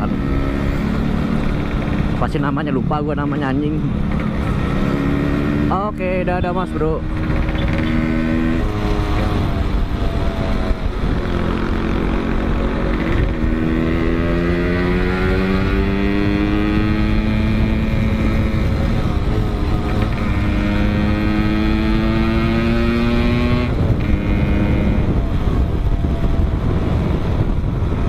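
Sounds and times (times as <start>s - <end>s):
motorcycle engine revving: 0.0s - 28.0s
wind rush: 0.0s - 28.0s.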